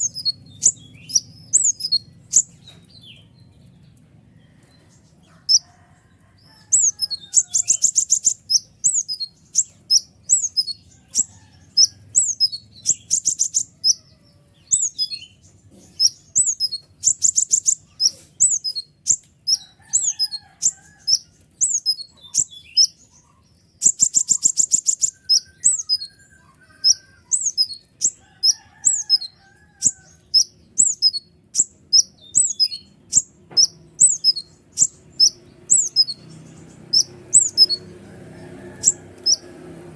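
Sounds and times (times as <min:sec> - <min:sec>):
sunbird chirping: 0:00.0 - 0:03.2, 0:06.6 - 0:39.5
fast buzzy bird trills: 0:26.8 - 0:38.0, 0:38.6 - 0:39.5.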